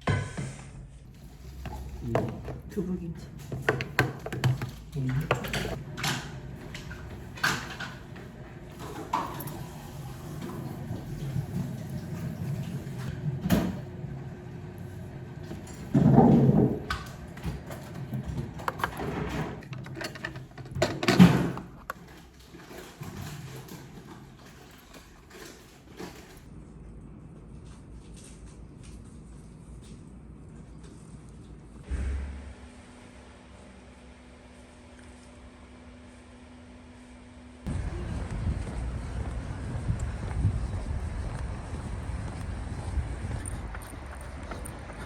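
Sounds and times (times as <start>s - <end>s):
loud kitchen noises: 0.0s - 26.9s
kitchen knocks and clicks: 1.6s - 9.5s, 15.9s - 22.8s.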